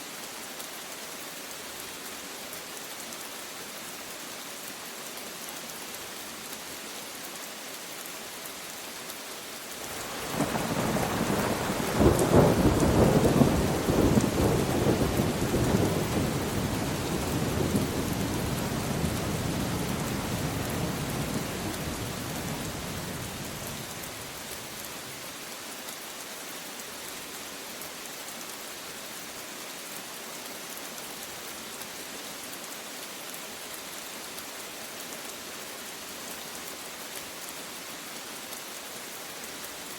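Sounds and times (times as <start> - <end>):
steady rain falling: 0.0 - 39.9
thunder rumbling: 10.0 - 23.7.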